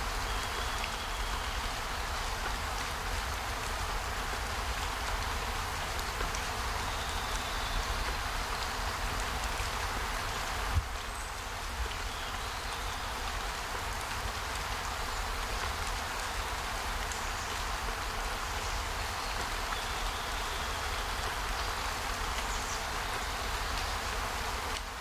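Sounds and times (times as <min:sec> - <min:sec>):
rushing water: 0:00.0 - 0:25.0.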